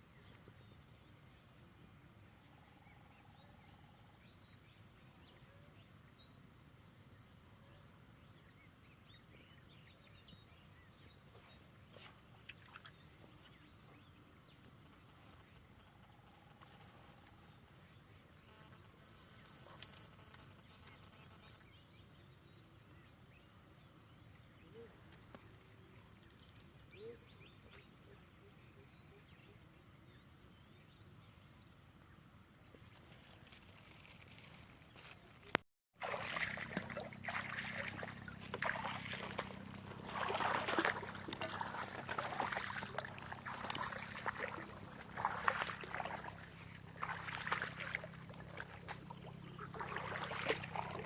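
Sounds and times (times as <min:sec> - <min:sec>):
faint bird chirps: 0:36.2 - 0:51.0.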